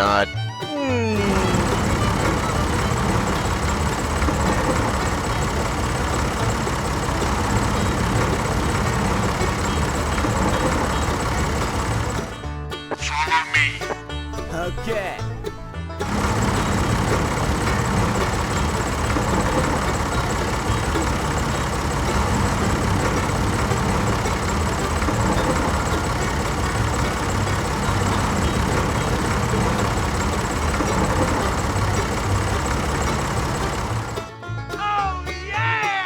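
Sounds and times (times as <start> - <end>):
vehicle engine running: 0.0 - 35.8.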